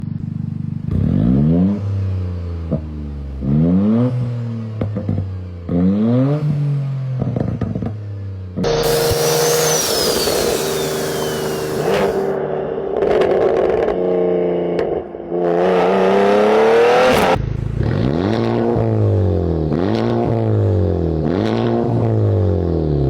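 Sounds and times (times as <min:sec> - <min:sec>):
hissy engine with high whistle: 0:08.7 - 0:12.3
car engine idling and revving: 0:08.8 - 0:12.3.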